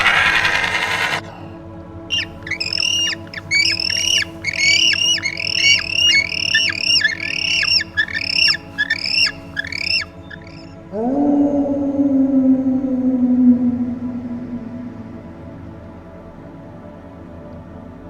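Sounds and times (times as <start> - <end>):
bird squawking: 0.0 - 1.3, 2.1 - 10.9.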